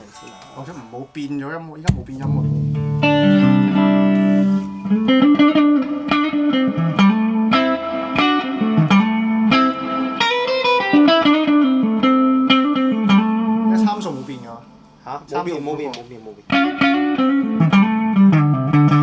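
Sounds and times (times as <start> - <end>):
electric guitar rock riff: 1.9 - 13.8, 16.5 - 19.0.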